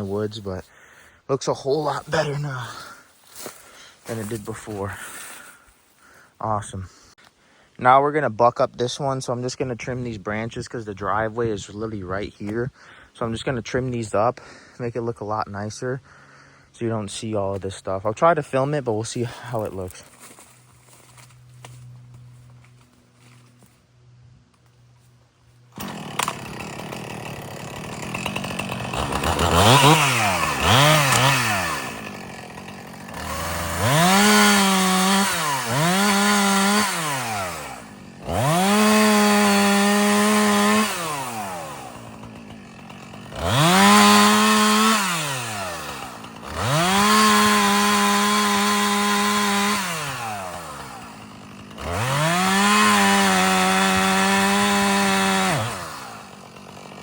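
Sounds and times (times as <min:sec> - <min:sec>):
chainsaw revving: 0:01.7 - 0:06.2, 0:25.6 - 0:57.0.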